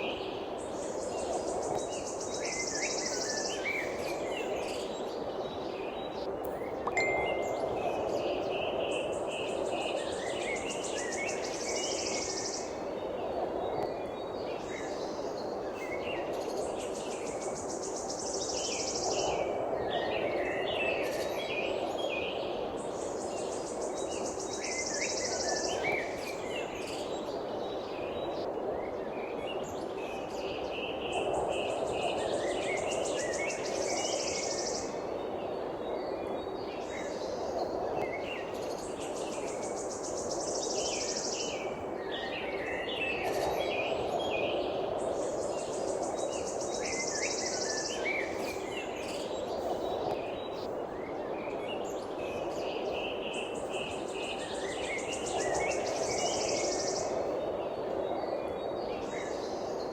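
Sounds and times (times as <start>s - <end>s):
birds chirping: 6.7s - 8.5s.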